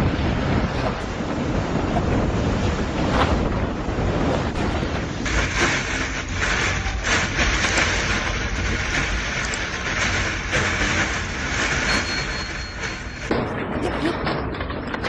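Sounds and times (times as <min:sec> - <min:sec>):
wind on microphone: 0:00.0 - 0:15.0
hail clattering on hard surfaces: 0:04.4 - 0:15.0.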